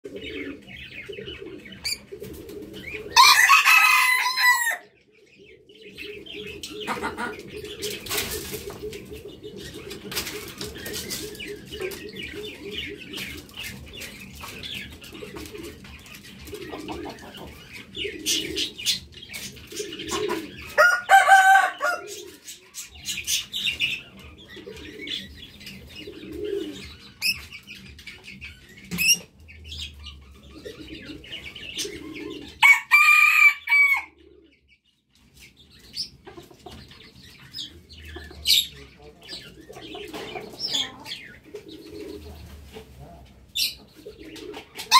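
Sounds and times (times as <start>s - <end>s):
soft clucks and chirps: 0.0s - 44.9s
rooster crowing: 3.2s - 4.8s, 20.8s - 22.0s, 32.6s - 34.1s.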